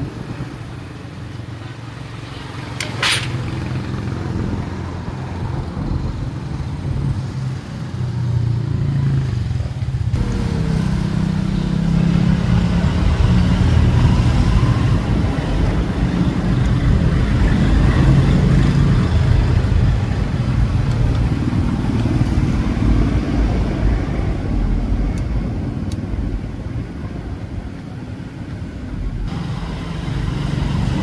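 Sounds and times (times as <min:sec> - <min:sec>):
sharp click: 0:02.8 - 0:03.5
motorcycle engine running: 0:05.4 - 0:25.5.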